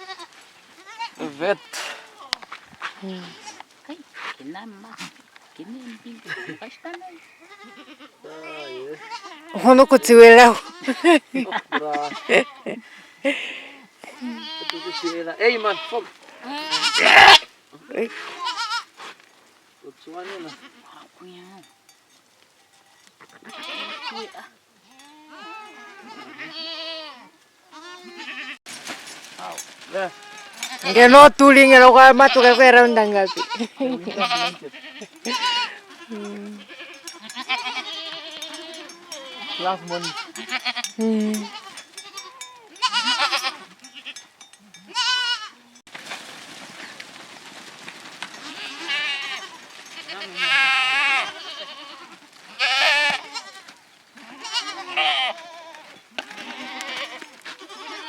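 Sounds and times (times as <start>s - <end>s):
goats bleating: 0.0s - 5.2s, 5.8s - 19.0s, 20.3s - 21.7s, 23.2s - 28.6s, 29.4s - 45.8s, 48.2s - 58.0s.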